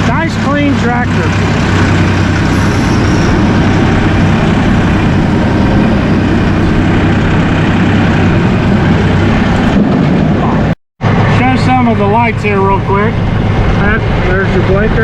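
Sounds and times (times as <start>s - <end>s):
tractor engine running: 0.0s - 15.0s.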